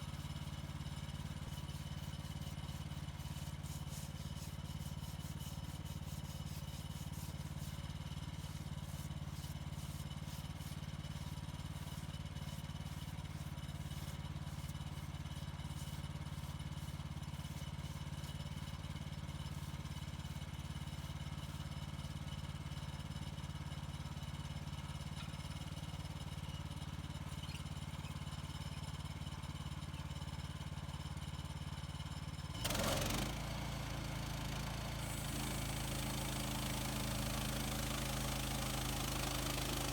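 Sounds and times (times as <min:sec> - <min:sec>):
sawmill engine running: 0:32.6 - 0:39.9.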